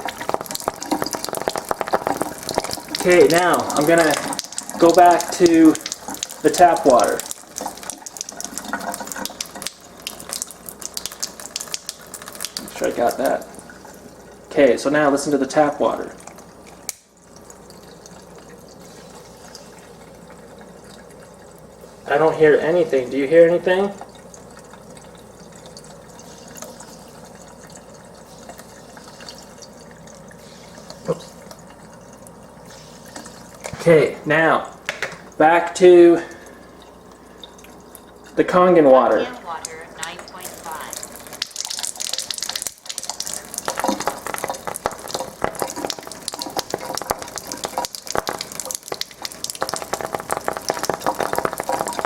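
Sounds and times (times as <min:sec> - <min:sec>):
crackling and popping at flame: 0:00.0 - 0:14.0, 0:16.3 - 0:18.3, 0:39.7 - 0:52.0
water drops ticking: 0:00.0 - 0:14.6, 0:16.2 - 0:21.9, 0:23.9 - 0:33.7, 0:34.6 - 0:52.0
tap water running: 0:00.0 - 0:52.0.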